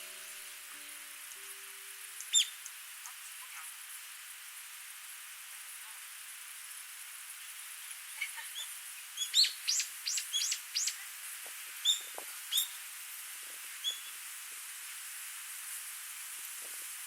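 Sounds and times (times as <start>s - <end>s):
stream hissing: 0.0s - 17.0s
songbird calling: 2.3s - 2.7s, 8.2s - 11.0s, 11.8s - 12.8s, 13.8s - 14.2s.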